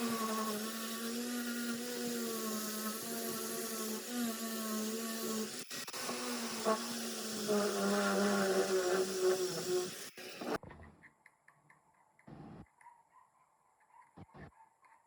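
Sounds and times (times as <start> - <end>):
power tool motor whining: 0.0 - 10.6.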